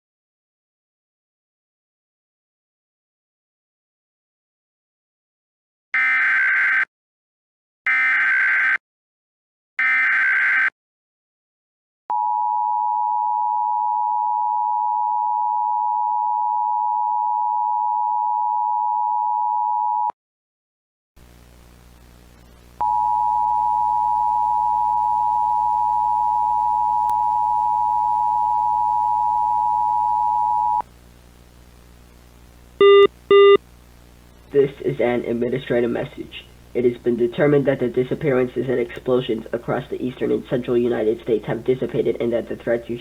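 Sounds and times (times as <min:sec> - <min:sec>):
faint hum and hiss: 0:21.2 - 0:43.0.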